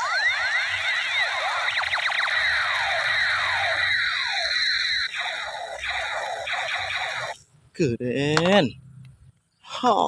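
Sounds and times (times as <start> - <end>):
toy gun siren tones: 0.0 - 7.4.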